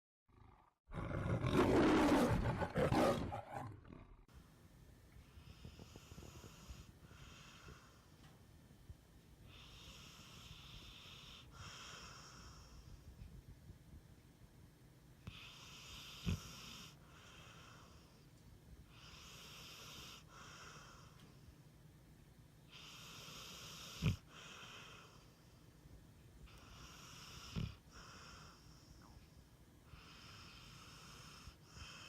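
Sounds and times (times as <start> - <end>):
dog snoring with wheezy breaths: 5.2 - 8.3, 9.4 - 13.2, 15.2 - 21.5, 22.7 - 25.6, 26.4 - 32.0.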